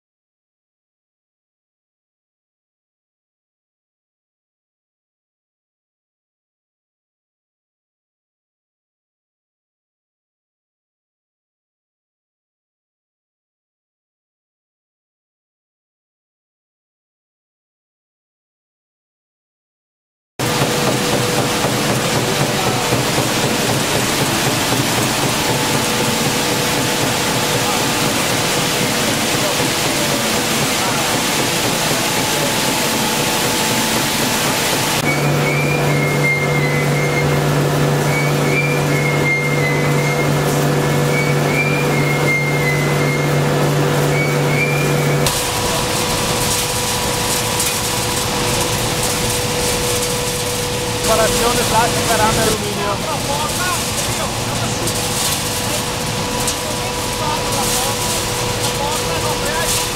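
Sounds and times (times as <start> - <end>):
loud steady machinery noise: 20.4 - 59.9
wavering high-pitched squeal: 24.9 - 59.8.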